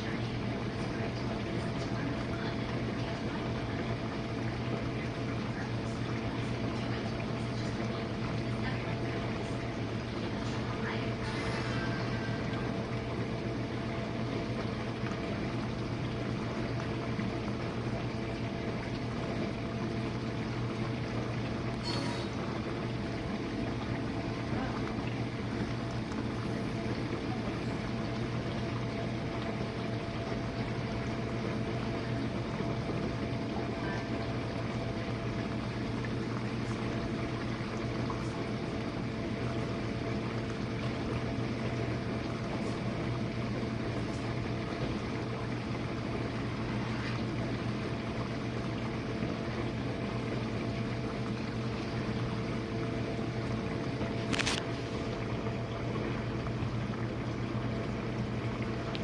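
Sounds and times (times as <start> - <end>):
dishwasher pump motor humming: 0.0 - 59.0
water spraying and sloshing: 0.0 - 59.0.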